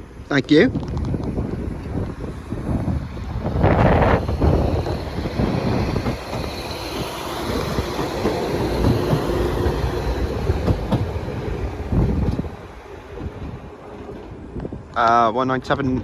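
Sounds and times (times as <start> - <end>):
train engine and wheel rumble: 0.0 - 16.0
wheels clicking over rail joints: 3.5 - 15.0.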